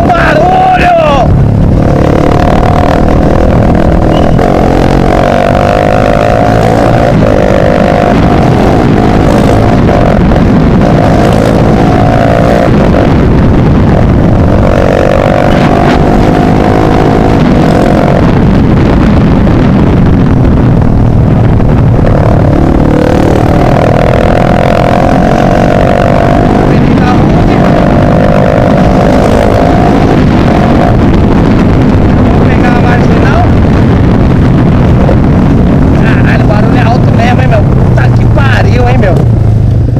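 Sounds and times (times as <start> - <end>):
motorcycle engine at speed: 0.0 - 39.9
wind rush on microphone: 0.0 - 39.9.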